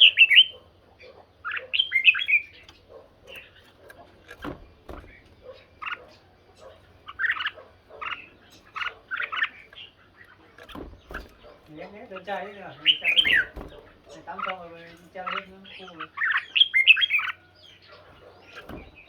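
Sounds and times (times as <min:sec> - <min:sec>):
bulbuls singing chirpy phrases: 0:00.0 - 0:19.0.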